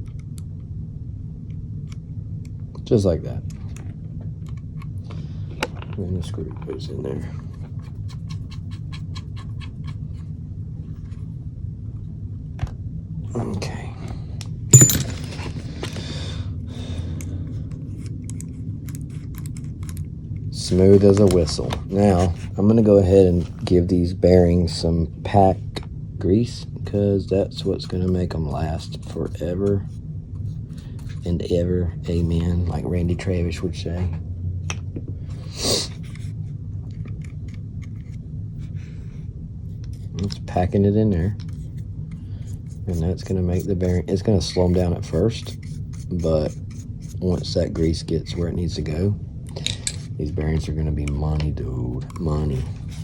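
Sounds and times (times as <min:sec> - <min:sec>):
steady low hum: 0:00.0 - 0:53.0
parts rattling and clicking: 0:14.7 - 0:16.0, 0:49.4 - 0:53.0.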